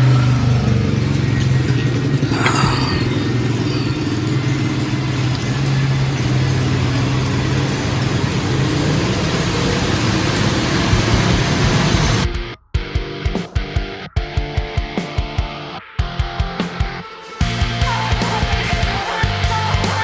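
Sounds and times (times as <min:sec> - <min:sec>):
road noise: 0:00.0 - 0:12.3
vehicle engine drone: 0:00.0 - 0:12.4.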